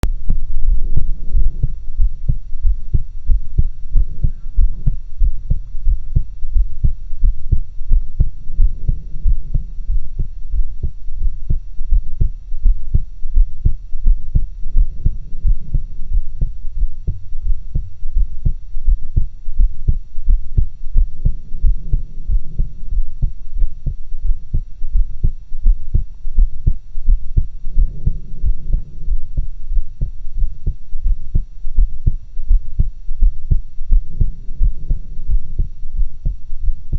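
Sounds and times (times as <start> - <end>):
heartbeat through stethoscope: 0.0 - 36.9.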